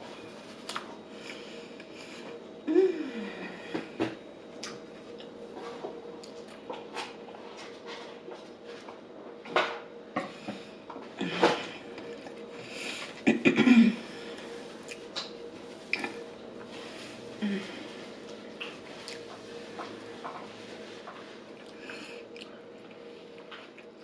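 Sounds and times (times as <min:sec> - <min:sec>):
chewing: 0:18.6 - 0:20.5.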